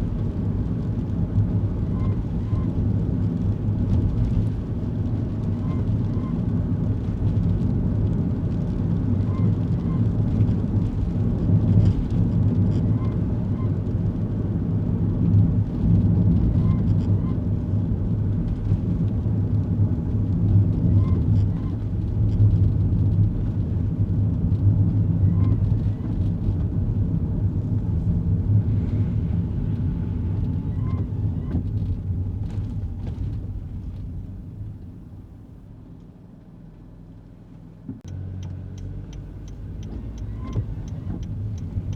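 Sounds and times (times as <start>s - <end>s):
car engine and road hum: 0.0s - 41.9s
faint double squeak: 30.6s - 31.6s, 39.2s - 41.9s.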